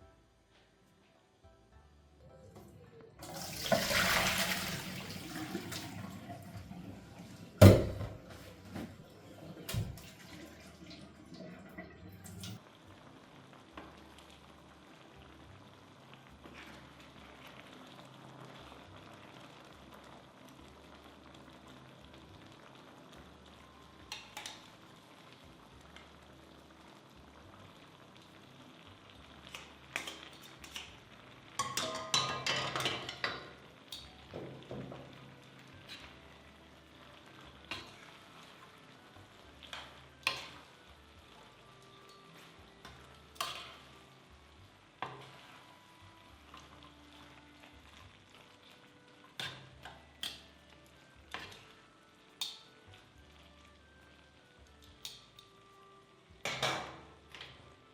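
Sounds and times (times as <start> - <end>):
utensils clinking: 31.6 - 34.0.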